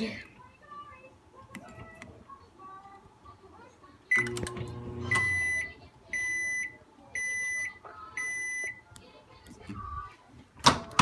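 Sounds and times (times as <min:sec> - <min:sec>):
microwave high beeps: 0:04.1 - 0:08.8.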